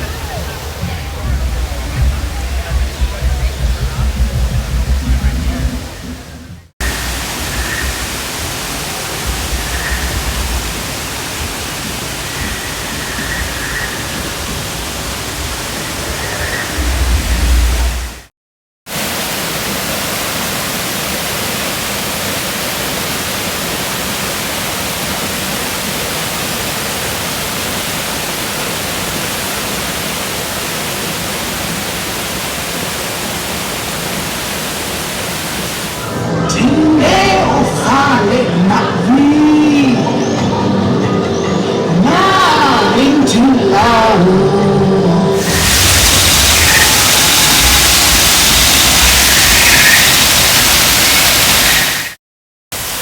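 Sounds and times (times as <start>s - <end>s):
low rumbling bursts: 0.0s - 18.3s, 43.0s - 51.6s
water rushing: 0.0s - 18.3s, 18.9s - 53.0s.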